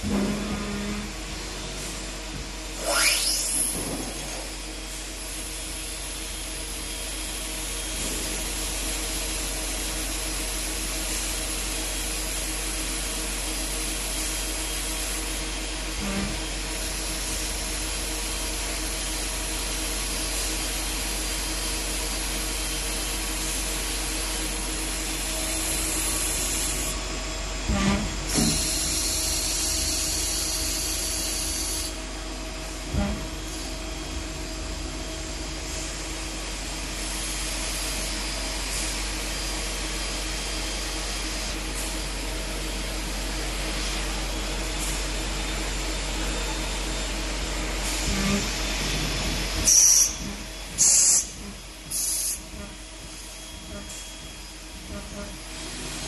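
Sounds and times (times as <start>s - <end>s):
spindle whine rising in pitch: 2.8s - 3.7s.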